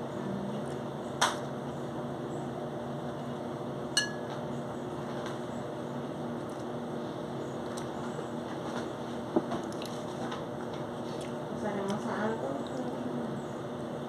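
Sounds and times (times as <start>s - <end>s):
steady low hum: 0.0s - 14.0s
tableware clinking: 4.0s - 4.4s.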